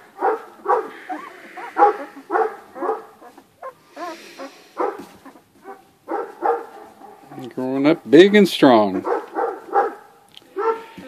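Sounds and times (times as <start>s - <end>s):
puppies whimpering and squealing: 0.5s - 5.8s.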